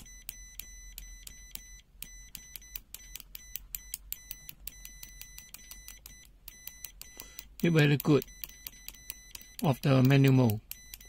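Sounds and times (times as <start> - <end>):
high-pitched short beeps: 0.0 - 11.0.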